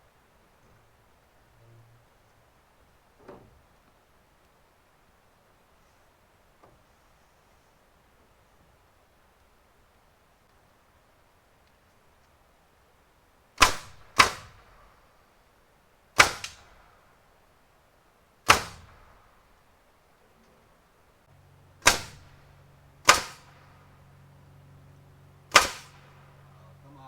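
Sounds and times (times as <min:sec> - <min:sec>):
low steady hum: 0:00.0 - 0:27.0
nail gun firing: 0:13.6 - 0:14.8, 0:16.2 - 0:16.8, 0:18.5 - 0:19.1, 0:21.8 - 0:22.4, 0:23.0 - 0:23.6, 0:25.5 - 0:26.1.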